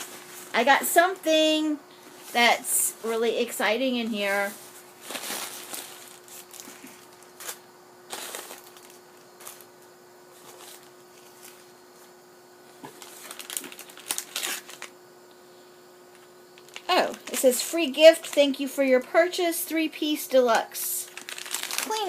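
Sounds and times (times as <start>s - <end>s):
faint steady hum: 0.0s - 22.0s
packaging rustling and crinkling: 4.1s - 11.7s, 12.8s - 14.9s, 16.6s - 18.4s, 21.0s - 22.0s.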